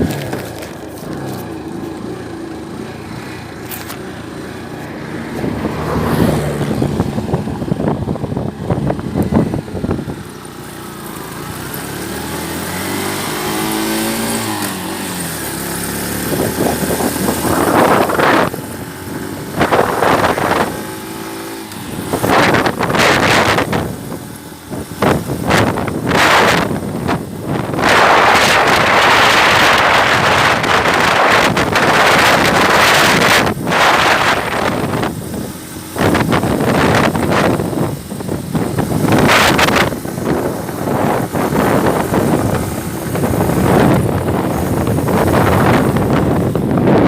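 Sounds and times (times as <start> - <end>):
motor vehicles passing: 0.0 - 47.0.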